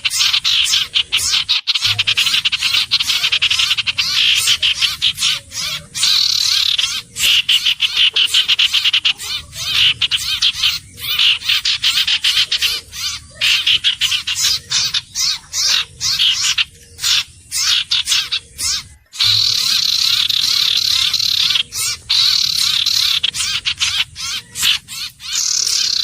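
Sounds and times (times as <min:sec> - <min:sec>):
bird chirping and chattering: 0:00.0 - 0:26.0.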